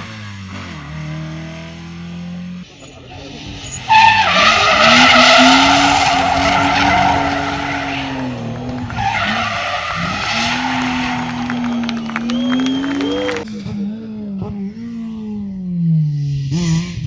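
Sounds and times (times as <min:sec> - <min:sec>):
car engine at high revs: 0:03.9 - 0:13.4
tyres squealing: 0:04.7 - 0:13.4.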